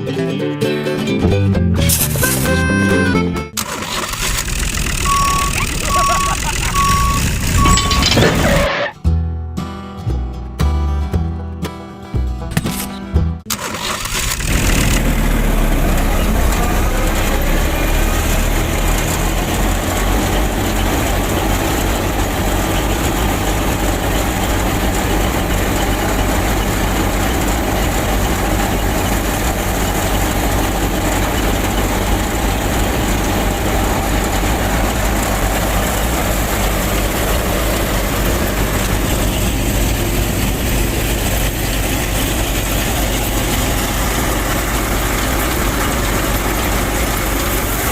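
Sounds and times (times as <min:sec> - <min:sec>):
machine running with deep hum: 0:04.4 - 0:08.7, 0:14.5 - 0:47.9.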